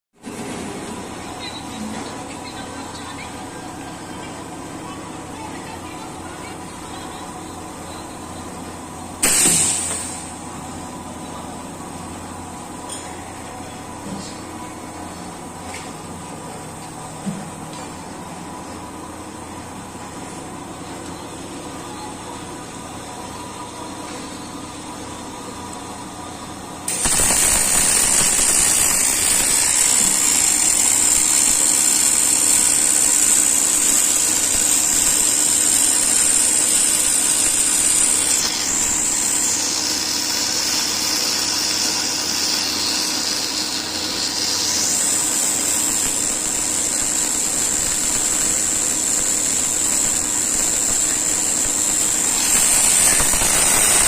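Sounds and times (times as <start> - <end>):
welding machine hum: 0.2 - 54.0
welding hiss with high whine: 9.2 - 10.6, 26.9 - 54.0.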